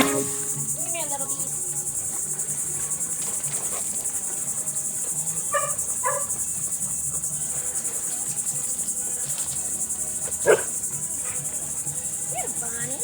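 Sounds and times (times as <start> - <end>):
short calls: 0.0 - 2.7
crickets chirring: 0.0 - 13.0.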